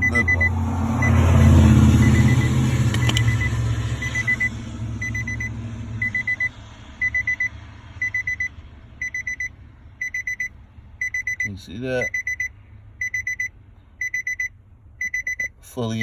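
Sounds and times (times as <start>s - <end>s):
loud low rumble: 0.0s - 9.0s
car warning chime beeping: 0.0s - 16.0s
click: 2.9s - 3.4s.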